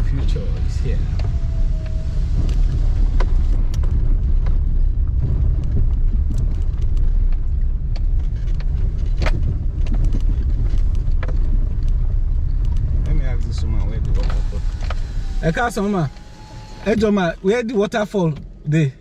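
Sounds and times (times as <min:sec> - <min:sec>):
engine and road rumble: 0:00.0 - 0:19.0
small knocks and rattles: 0:03.1 - 0:15.0.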